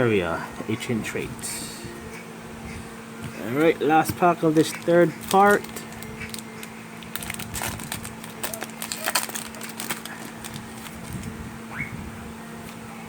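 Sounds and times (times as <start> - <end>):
steady low hum: 0.0 - 13.0
cards being handled: 3.6 - 11.3
foil wrapper crinkling and tearing: 3.9 - 11.4.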